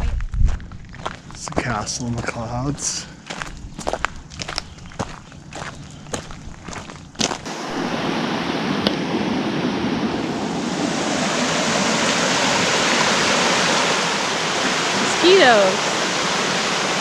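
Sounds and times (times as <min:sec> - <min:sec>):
footsteps: 0:00.0 - 0:07.5
stream water rushing: 0:07.4 - 0:17.0.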